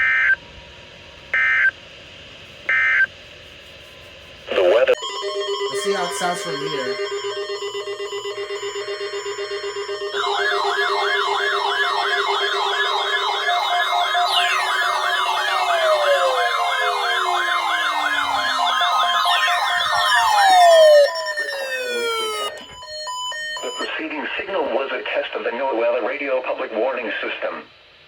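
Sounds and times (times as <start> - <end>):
falling siren glides: 4.9 - 23.9
fast-warbling siren wails: 4.9 - 23.9
pulsing steady alarm tone: 4.9 - 24.1.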